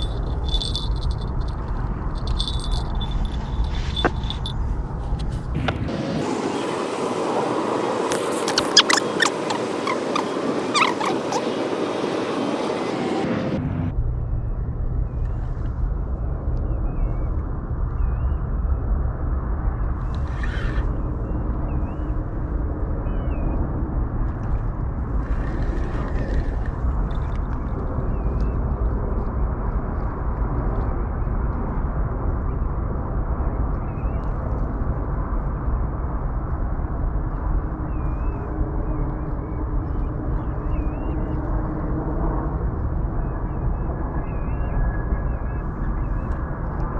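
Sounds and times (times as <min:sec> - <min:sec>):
low outdoor rumble: 0:00.0 - 0:46.9
loud rush of noise: 0:05.5 - 0:14.0
faint high wavering chirps: 0:08.1 - 0:12.3.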